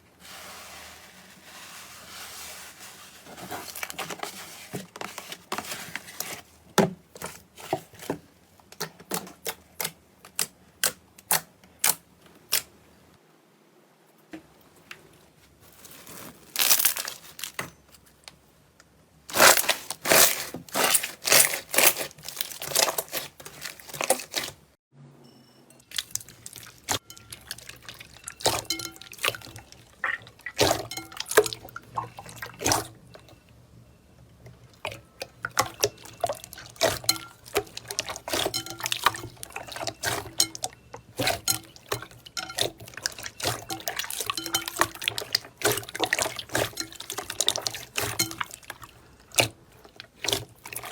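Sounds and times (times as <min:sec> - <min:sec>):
slime squelching: 0:19.3 - 0:24.6, 0:25.9 - 0:33.4, 0:34.5 - 0:50.9.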